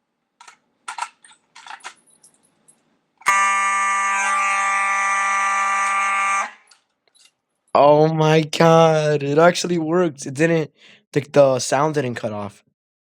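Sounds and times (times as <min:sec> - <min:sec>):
fire alarm tone: 0:03.2 - 0:06.7.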